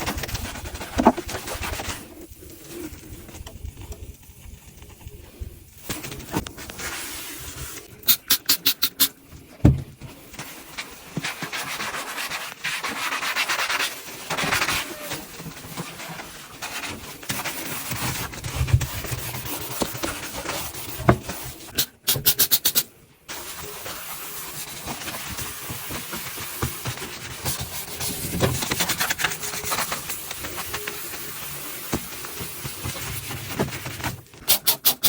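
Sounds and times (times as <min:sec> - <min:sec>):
sharp clicks: 0:08.1 - 0:09.2
scrubbing and rubbing: 0:10.3 - 0:22.4.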